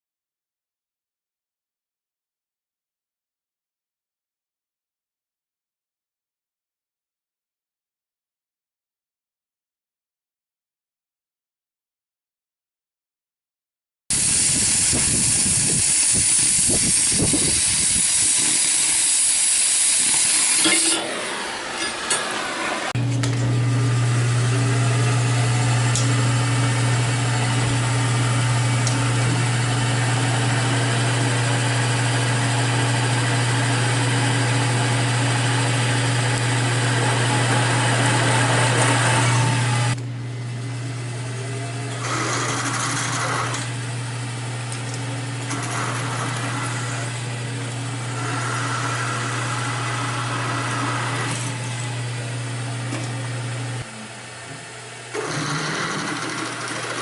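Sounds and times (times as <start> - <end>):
angle grinder grinding steel: 14.2 - 23.0, 24.0 - 40.0, 41.3 - 44.0, 44.7 - 53.9, 55.1 - 57.0.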